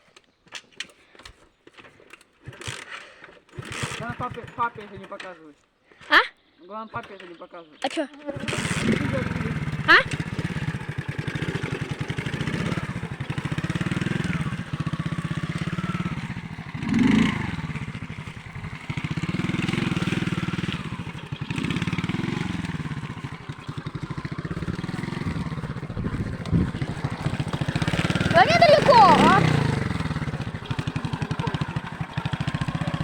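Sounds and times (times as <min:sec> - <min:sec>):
moped engine revving: 0:03.6 - 0:05.2, 0:08.3 - 0:33.0.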